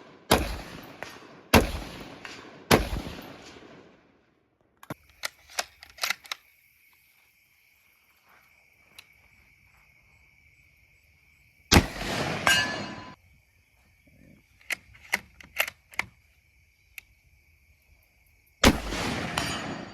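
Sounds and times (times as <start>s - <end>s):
rifle shot report: 18.6s - 19.9s.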